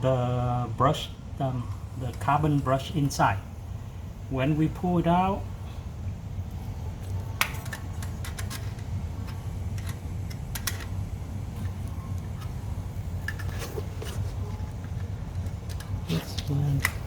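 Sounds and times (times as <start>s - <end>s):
steady low hum: 0.0s - 17.0s
metal parts and tools clicking: 7.4s - 11.0s.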